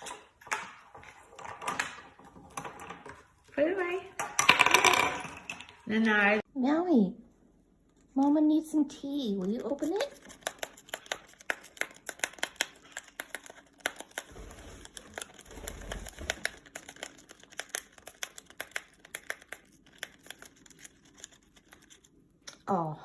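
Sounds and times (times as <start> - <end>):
paper wrapper crinkling and tearing: 9.5 - 22.2.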